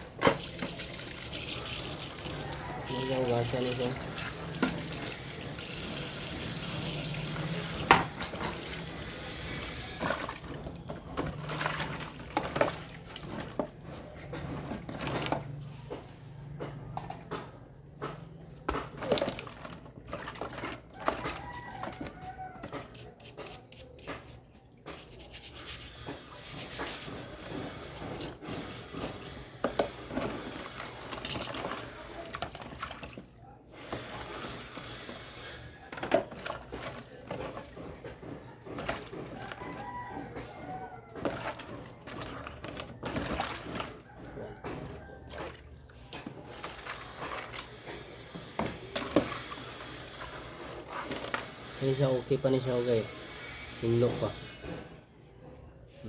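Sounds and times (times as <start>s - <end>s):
water running from a tap: 0.0s - 10.4s.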